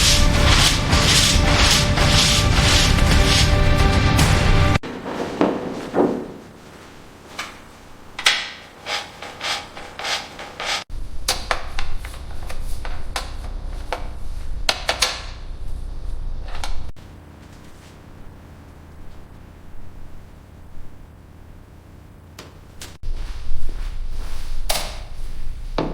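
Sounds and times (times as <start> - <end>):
rubbing and scraping strokes: 0.0 - 7.8, 8.6 - 16.9
low steady rumble: 10.9 - 22.3.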